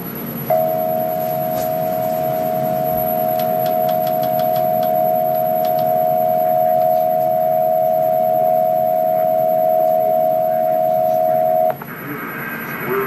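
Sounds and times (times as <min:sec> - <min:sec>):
two-tone alert signal: 0:00.5 - 0:11.8.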